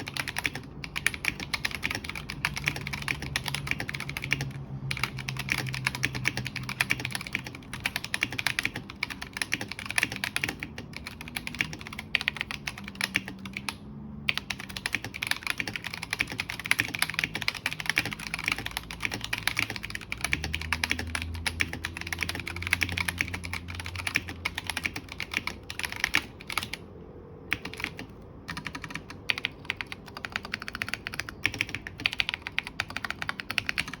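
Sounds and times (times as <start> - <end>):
mechanical keyboard typing: 0.0 - 34.0.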